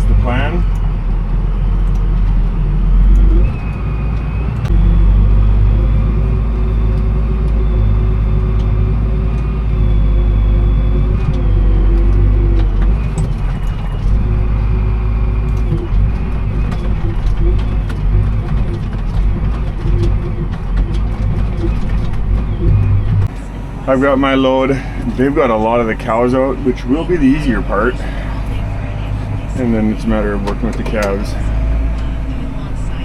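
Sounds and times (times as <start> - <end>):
farm vehicle engine rumbling: 0.0 - 33.0.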